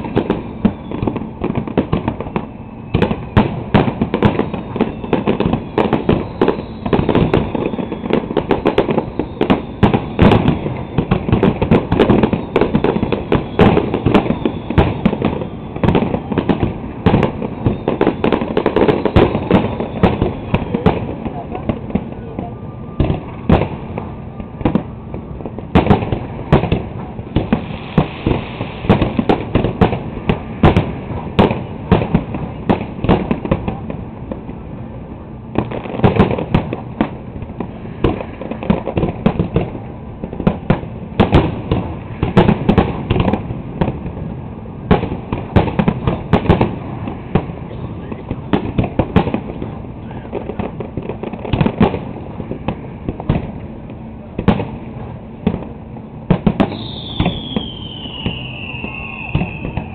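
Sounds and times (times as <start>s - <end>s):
fireworks bangs: 0.0s - 59.9s.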